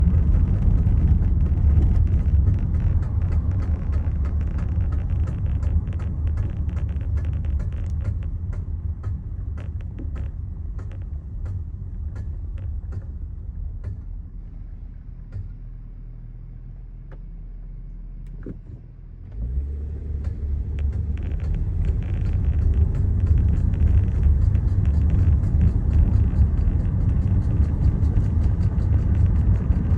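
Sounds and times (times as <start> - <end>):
sharp irregular ticks: 0.0 - 13.2, 20.2 - 29.9
car driving with low rumble: 0.0 - 29.9.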